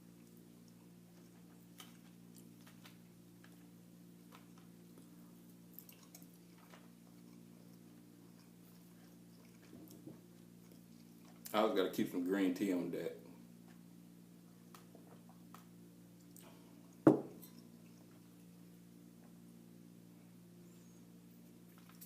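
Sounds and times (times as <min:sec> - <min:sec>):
person chewing food: 0:00.0 - 0:11.5
steady low hum: 0:00.0 - 0:22.0.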